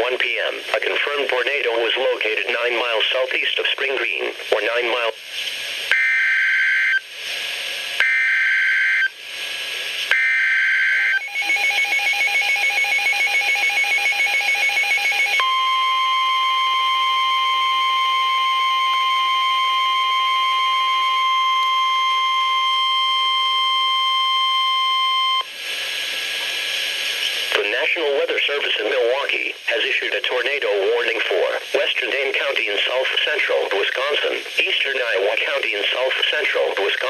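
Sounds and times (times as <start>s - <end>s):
steady warning alarm tone: 5.9s - 7.0s, 8.0s - 9.1s, 10.1s - 25.5s
rapid pulsing beep: 10.2s - 25.4s.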